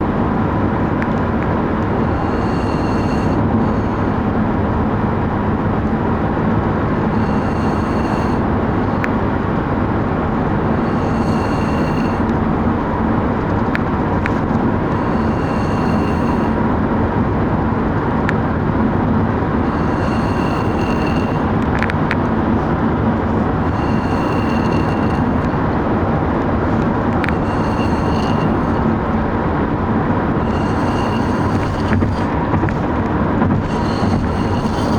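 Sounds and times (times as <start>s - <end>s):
man snoring: 1.9s - 4.4s, 6.7s - 9.0s, 10.2s - 12.8s, 13.6s - 16.7s, 19.5s - 21.7s, 23.2s - 25.9s, 26.5s - 29.2s, 30.2s - 32.9s, 33.6s - 34.9s.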